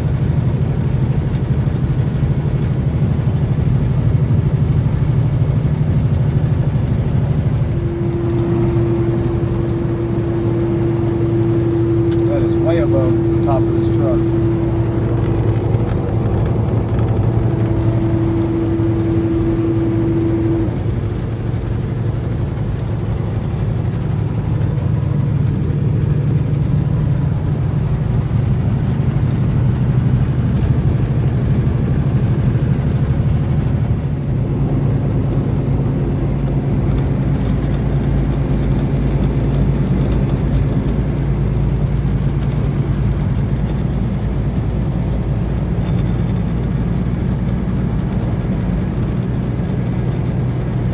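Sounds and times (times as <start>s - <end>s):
truck engine and road noise: 0.0s - 50.9s
brief higher hum: 7.8s - 20.9s.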